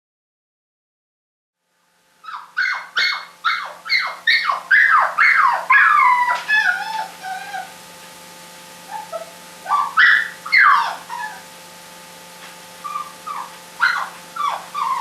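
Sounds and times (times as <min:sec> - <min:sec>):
puppy crying and whining: 0:02.2 - 0:07.8, 0:08.9 - 0:11.6, 0:12.8 - 0:15.0.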